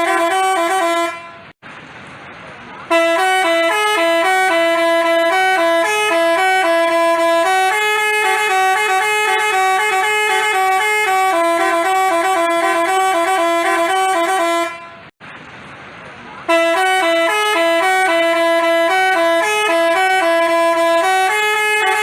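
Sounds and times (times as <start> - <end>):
multi-tone bus horn tune: 0.0 - 1.6, 2.8 - 15.2, 16.5 - 22.0.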